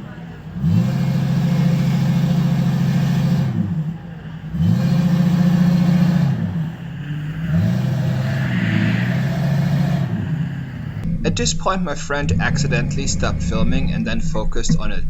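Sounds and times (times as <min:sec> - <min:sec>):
truck engine revving: 0:00.0 - 0:15.0.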